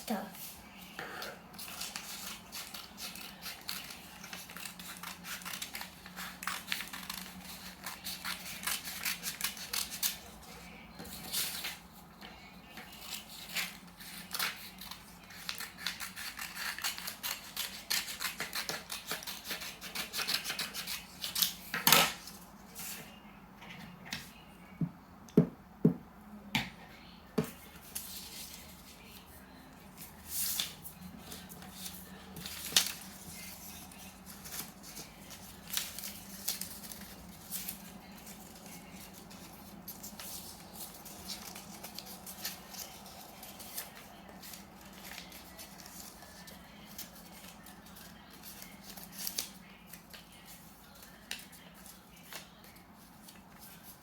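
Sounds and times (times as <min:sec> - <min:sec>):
paper rustling and crinkling: 0:29.9 - 0:54.0.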